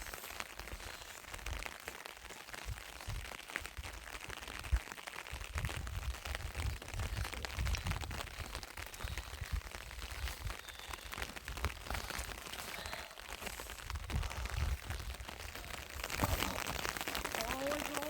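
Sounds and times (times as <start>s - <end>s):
rain falling: 0.0s - 18.0s
wind buffeting microphone: 4.6s - 18.0s.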